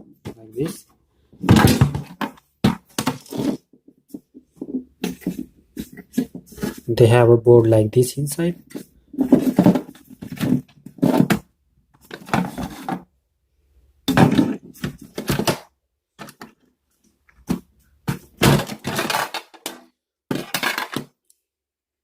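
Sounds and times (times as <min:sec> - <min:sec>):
plastic casing clattering and scraping: 0:00.1 - 0:06.9, 0:08.6 - 0:13.1, 0:14.1 - 0:16.7, 0:17.3 - 0:21.2.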